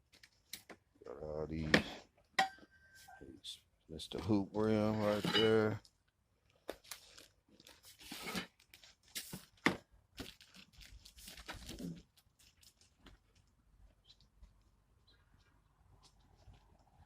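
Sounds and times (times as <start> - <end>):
packaging tearing and rustling: 6.6 - 13.5.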